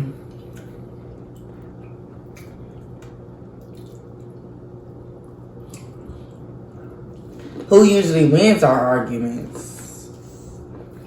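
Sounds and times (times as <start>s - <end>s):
wet eating sounds: 0.0s - 7.7s
steady low hum: 0.0s - 11.0s.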